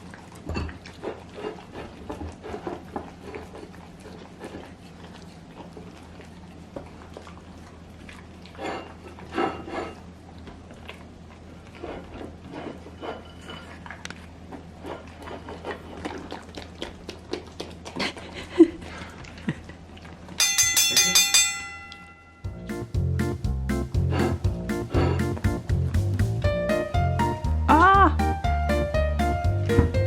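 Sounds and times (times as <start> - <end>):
dog eating from a dish: 0.0 - 21.1
bright chime sound effect: 20.4 - 22.6.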